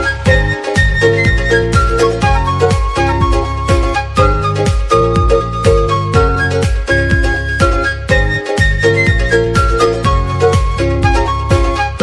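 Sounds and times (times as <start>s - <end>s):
instrumental pop music: 0.0s - 12.0s
kick drum: 0.3s - 12.0s.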